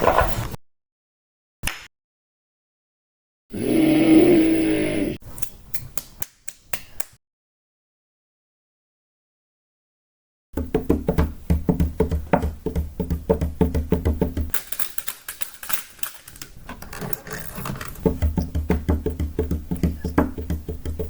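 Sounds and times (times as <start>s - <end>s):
fast percussive knocking: 10.6s - 14.5s, 17.0s - 21.0s.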